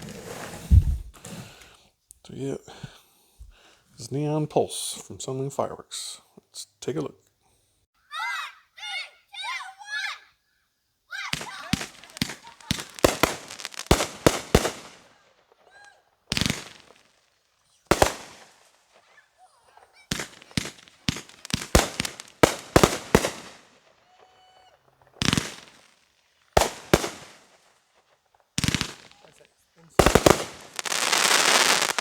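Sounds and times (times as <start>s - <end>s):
fireworks bangs: 0.0s - 1.3s, 11.3s - 15.6s, 16.3s - 17.2s, 17.8s - 32.0s.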